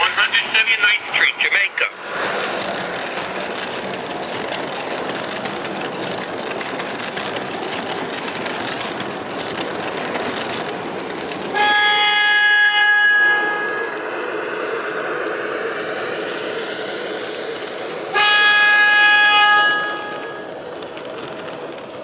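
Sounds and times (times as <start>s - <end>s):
model train rumbling on track: 0.0s - 22.0s
subway horn: 11.5s - 14.1s, 18.1s - 20.6s.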